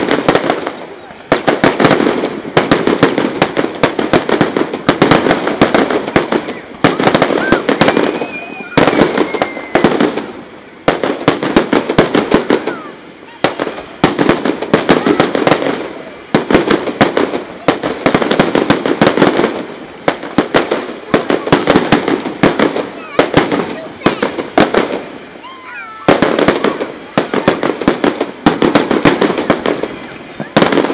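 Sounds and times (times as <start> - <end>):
fireworks crackling bangs: 0.0 - 30.9
faint thin whistle: 7.4 - 9.8.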